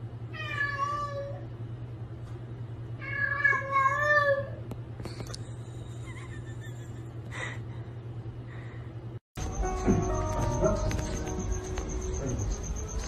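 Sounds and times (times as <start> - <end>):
cat meowing: 0.4 - 1.4, 3.0 - 4.6
steady low hum: 4.4 - 13.0.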